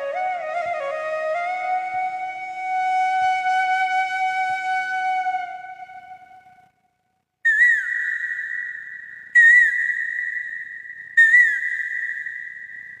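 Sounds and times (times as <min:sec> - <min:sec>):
high whistled note: 0:07.5 - 0:13.0.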